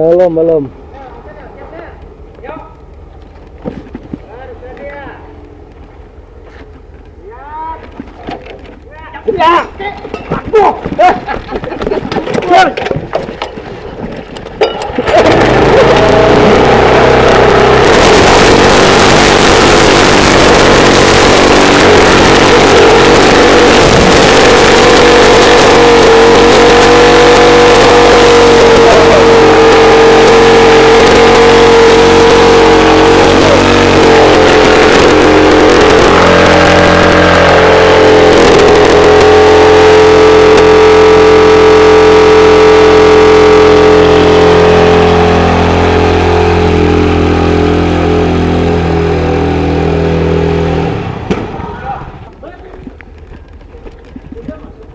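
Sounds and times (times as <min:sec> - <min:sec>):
small petrol engine at high revs: 0:14.9 - 0:51.4.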